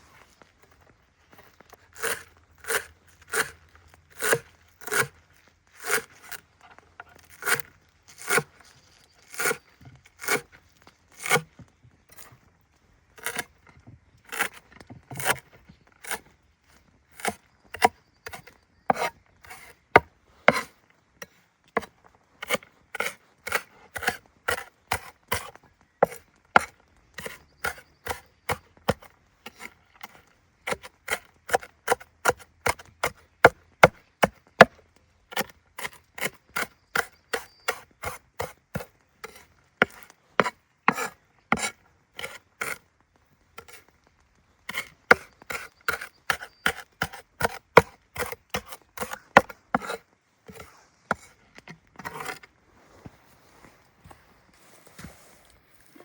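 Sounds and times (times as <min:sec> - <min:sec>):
blade chopping wood: 0:02.0 - 0:05.2, 0:05.8 - 0:06.4, 0:07.2 - 0:08.6, 0:10.2 - 0:10.6, 0:11.2 - 0:11.5, 0:14.3 - 0:16.3, 0:17.2 - 0:42.8, 0:44.7 - 0:51.3.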